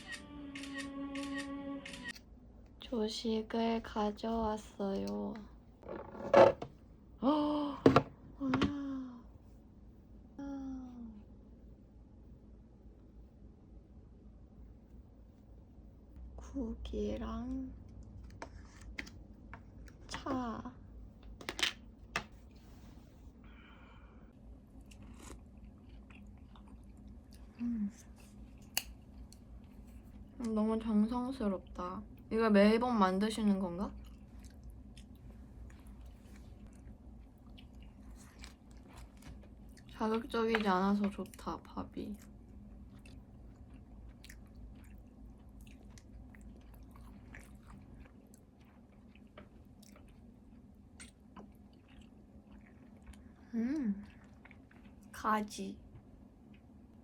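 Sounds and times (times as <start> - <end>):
steady low hum: 0.0 - 57.0
quiet chewing: 24.6 - 30.6, 33.9 - 55.2, 55.8 - 57.0.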